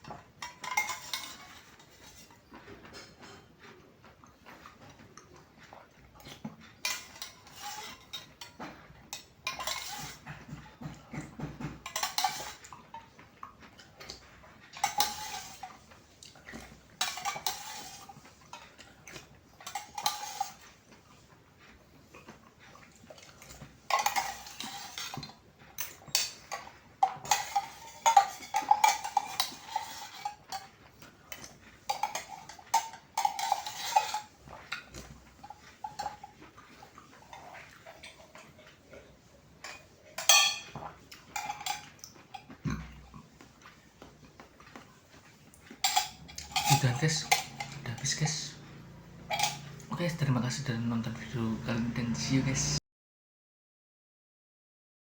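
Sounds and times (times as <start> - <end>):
spoon clinking in a glass: 45.9 - 48.1.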